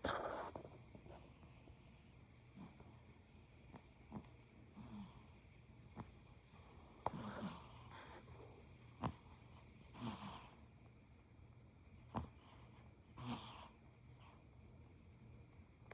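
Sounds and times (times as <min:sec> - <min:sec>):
puppy snoring and snorting: 0:05.9 - 0:08.2, 0:08.8 - 0:10.6, 0:12.1 - 0:14.3.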